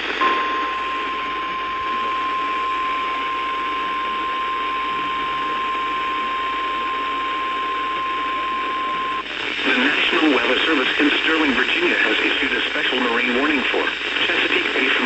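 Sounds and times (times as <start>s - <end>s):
steady pure alarm tone: 0.0s - 10.7s
radio static hiss: 0.0s - 15.0s.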